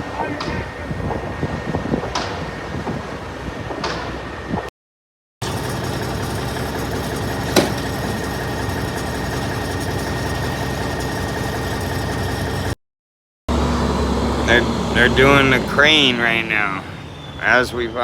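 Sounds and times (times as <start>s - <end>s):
truck engine idling: 5.4s - 12.8s, 13.5s - 18.0s.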